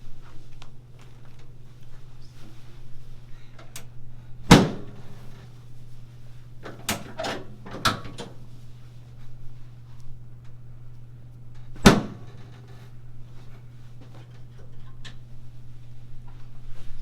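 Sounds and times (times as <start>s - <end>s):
steady low hum: 0.0s - 17.0s
drop table clunks: 4.5s - 5.2s.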